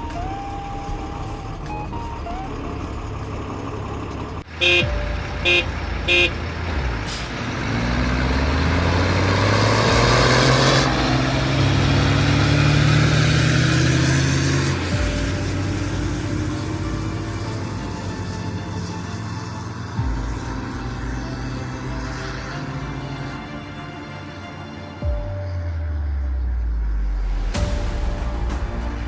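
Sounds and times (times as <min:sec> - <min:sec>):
heavy truck engine revving: 0:00.0 - 0:27.1
short horn toots: 0:04.6 - 0:07.8.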